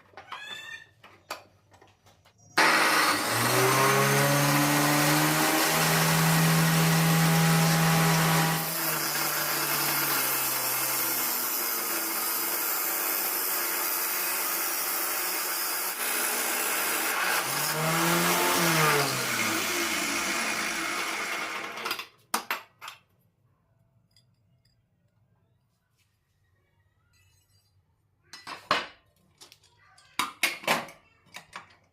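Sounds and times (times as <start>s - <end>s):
angle grinder running: 2.6s - 21.9s.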